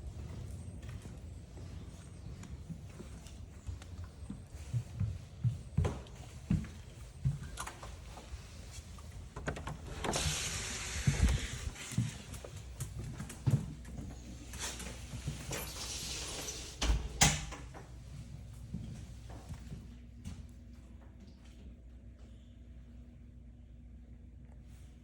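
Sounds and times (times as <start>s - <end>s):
footsteps and scuffing on trail: 0.1s - 9.0s
scraping hissing sounds: 10.0s - 12.3s, 15.5s - 16.9s.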